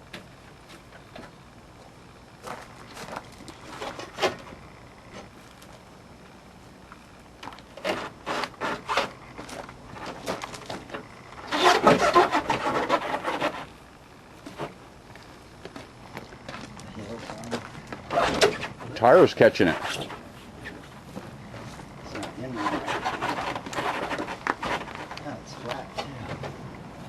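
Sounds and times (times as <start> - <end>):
scraping rub: 7.8 - 10.6, 11.4 - 13.7, 18.1 - 20.9, 21.6 - 25.3.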